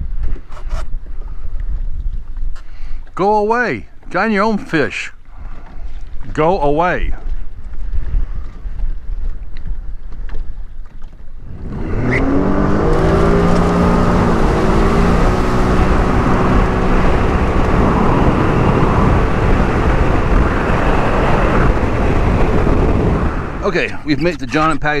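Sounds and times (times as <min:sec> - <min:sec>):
watercraft engine running: 0:10.0 - 0:24.8
wind and water rushing: 0:11.4 - 0:24.7.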